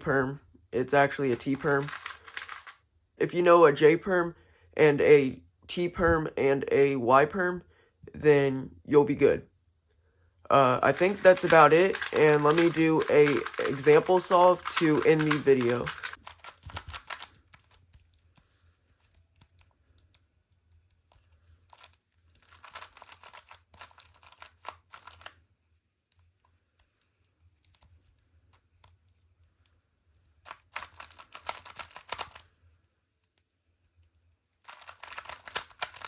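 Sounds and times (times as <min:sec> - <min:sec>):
puzzle cube layers clicking: 0:01.1 - 0:02.8, 0:10.8 - 0:18.2, 0:21.7 - 0:25.4, 0:30.5 - 0:32.4, 0:34.6 - 0:36.0.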